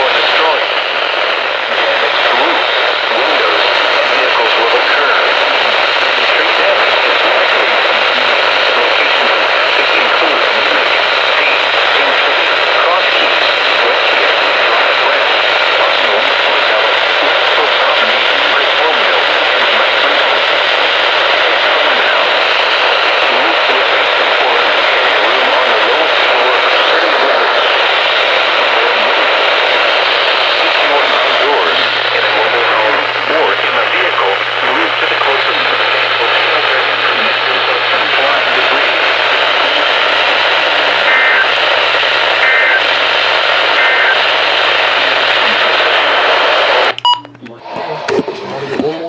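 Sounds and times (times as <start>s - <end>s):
faint broadcast voice: 0.0s - 49.0s
radio static hiss: 0.0s - 49.0s
low steady hum: 46.8s - 48.8s
short high beeps: 46.9s - 47.4s.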